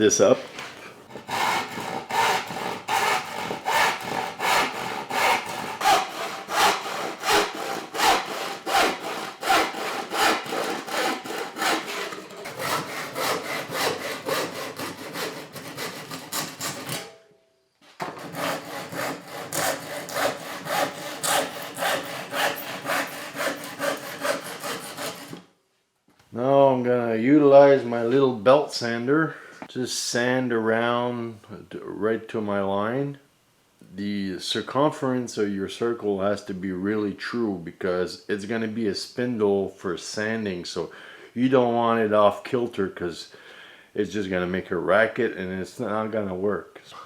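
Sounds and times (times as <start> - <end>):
hand saw cutting plywood: 0.8 - 17.2, 18.0 - 25.5.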